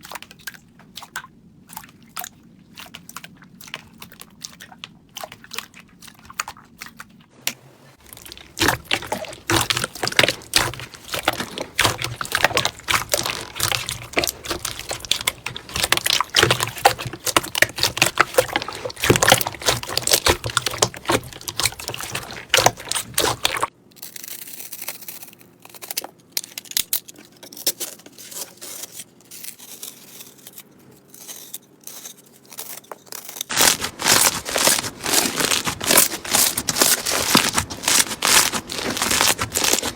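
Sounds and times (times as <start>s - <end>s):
slime squished by hand: 0.1s - 23.7s, 33.5s - 39.9s.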